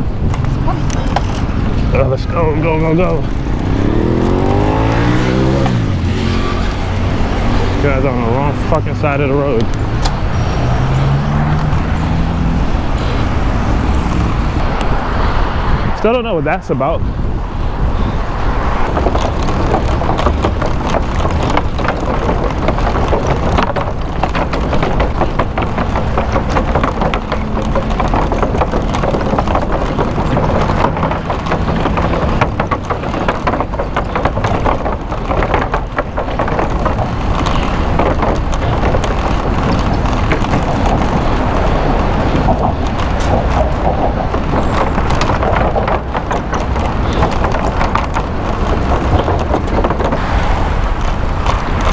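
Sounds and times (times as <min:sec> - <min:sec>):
city traffic rumble: 0:00.0 - 0:51.9
wind buffeting microphone: 0:00.0 - 0:51.9
short knocks: 0:18.9 - 0:50.2.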